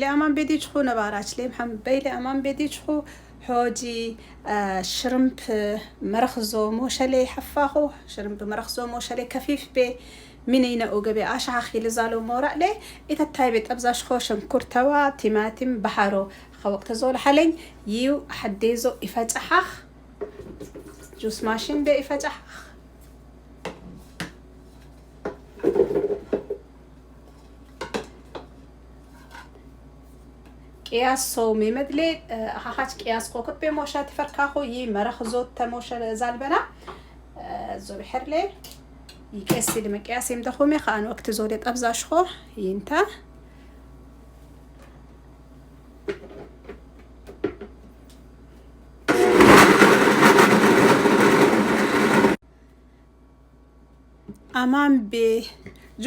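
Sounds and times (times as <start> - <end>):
kitchen blender running: 49.1 - 52.4.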